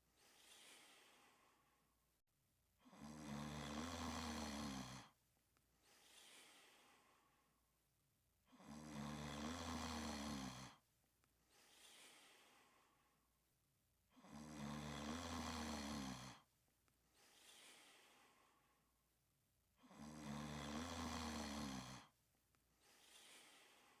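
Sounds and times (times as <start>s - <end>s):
soft breath out: 0.0s - 2.0s, 5.8s - 7.8s, 11.4s - 13.4s, 17.1s - 19.0s, 22.7s - 24.0s
loud rattling snores: 2.8s - 5.2s, 8.5s - 10.8s, 14.1s - 16.5s, 19.8s - 22.1s.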